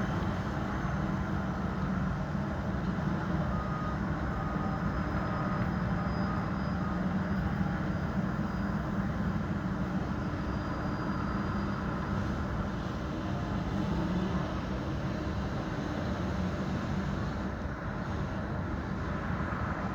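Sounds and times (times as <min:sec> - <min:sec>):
rumble of passing vehicles: 0:00.0 - 0:19.9.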